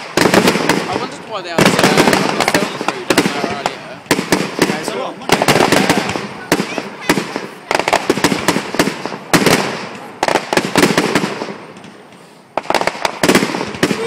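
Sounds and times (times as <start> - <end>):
fireworks bangs and crackling: 0.0 - 14.0.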